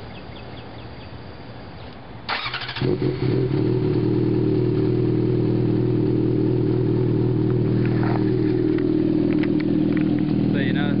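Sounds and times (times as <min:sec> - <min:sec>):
motorcycle engine idling: 0:02.3 - 0:11.0.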